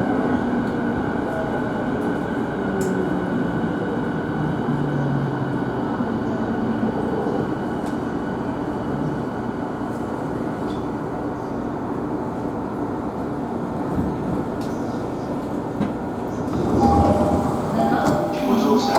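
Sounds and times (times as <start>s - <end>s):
train wheels rumbling on rail: 13.1s - 18.9s.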